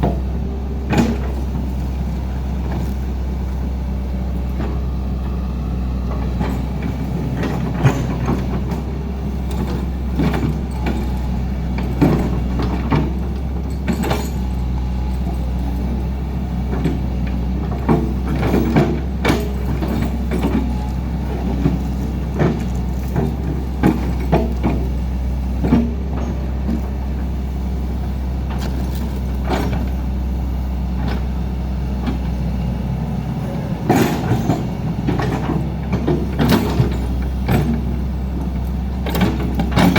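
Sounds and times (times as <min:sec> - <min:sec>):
short knocks and clanks: 0:00.0 - 0:01.8, 0:06.0 - 0:27.4, 0:32.0 - 0:39.9
diesel machinery running: 0:00.0 - 0:39.9.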